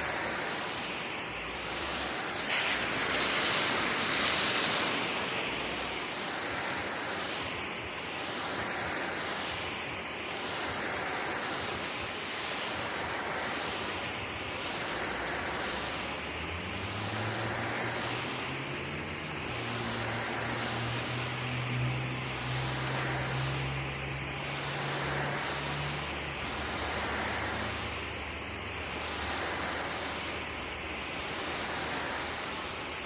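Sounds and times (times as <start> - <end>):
sprinkler spraying water: 0.0 - 33.0.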